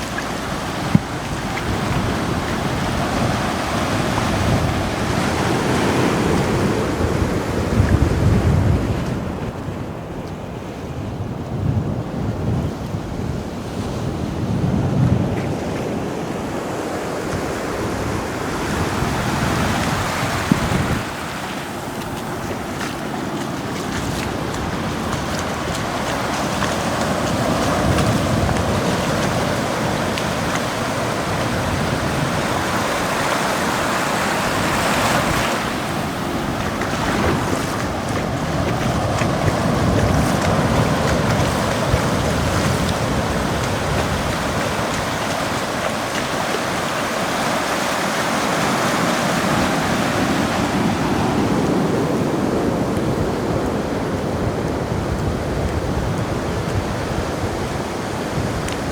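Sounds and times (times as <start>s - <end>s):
ocean surf breaking: 0.0s - 11.2s, 13.4s - 58.9s
wind buffeting microphone: 0.0s - 58.9s.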